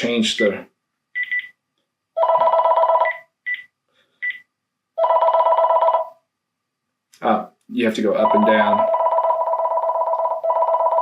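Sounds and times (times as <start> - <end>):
phone ringer warbling trill: 2.2 - 3.2, 8.2 - 11.0.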